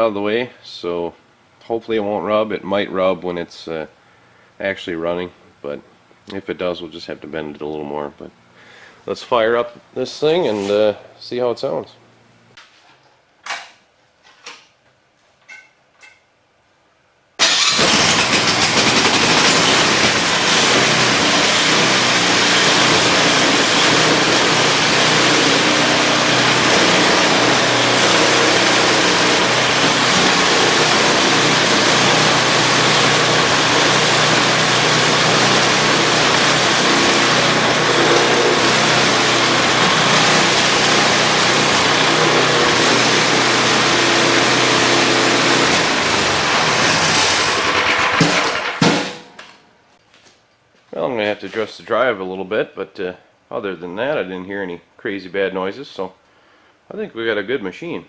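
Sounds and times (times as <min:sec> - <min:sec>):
snowblower engine running: 0:17.4 - 0:49.3.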